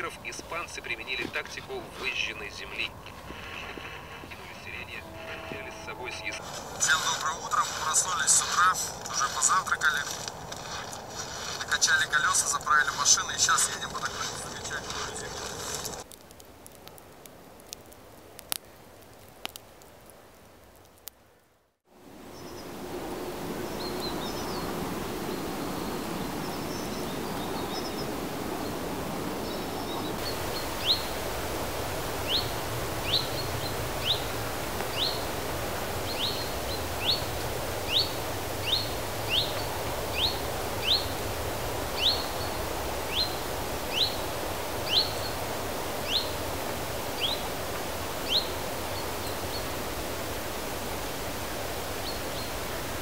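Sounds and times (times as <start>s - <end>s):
steady rushing background: 0.0s - 16.0s.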